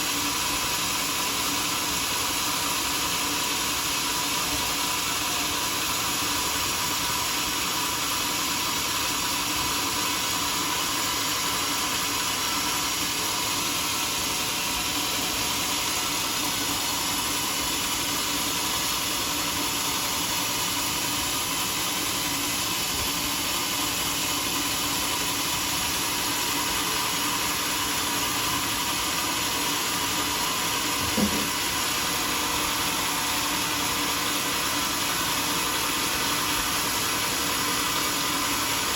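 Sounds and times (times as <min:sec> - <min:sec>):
sawmill machinery hissing: 0:00.0 - 0:38.9.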